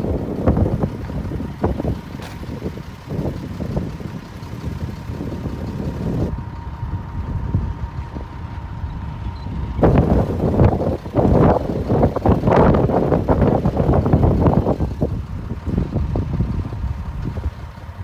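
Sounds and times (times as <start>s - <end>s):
heavy diesel machinery rumbling: 0.0s - 18.0s.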